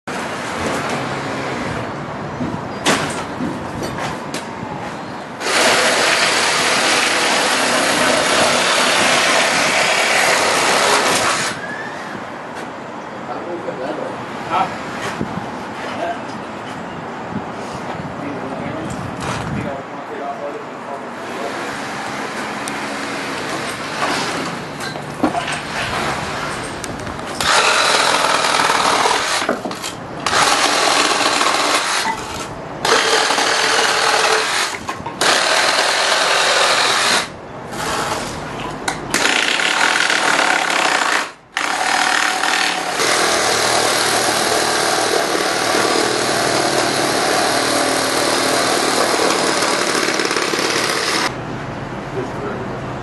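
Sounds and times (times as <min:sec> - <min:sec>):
power tool running: 0:05.4 - 0:11.6, 0:27.4 - 0:29.5, 0:30.2 - 0:32.0, 0:32.8 - 0:38.3, 0:39.1 - 0:51.4.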